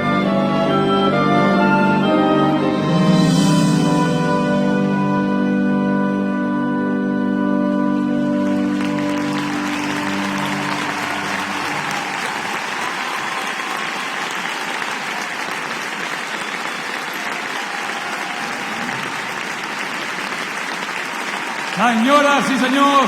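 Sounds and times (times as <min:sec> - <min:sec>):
crowd applauding: 0:08.2 - 0:23.0.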